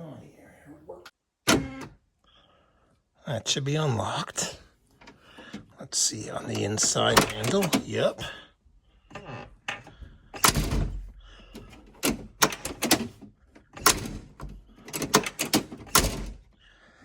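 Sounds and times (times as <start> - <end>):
car door latch clicks and clunks: 11.6 - 16.4.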